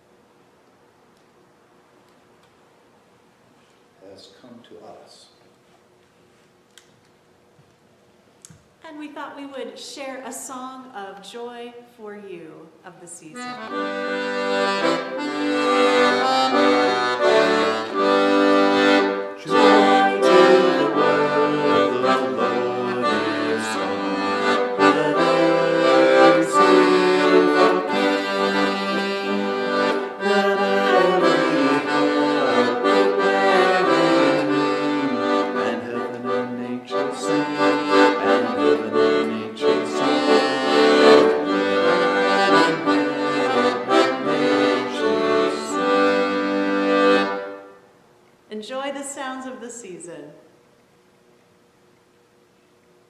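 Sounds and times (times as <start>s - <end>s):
instrumental seasonal song: 13.2s - 47.9s.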